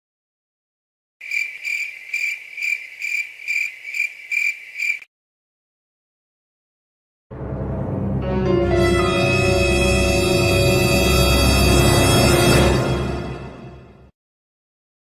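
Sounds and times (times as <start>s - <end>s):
crickets chirping: 1.2s - 5.1s.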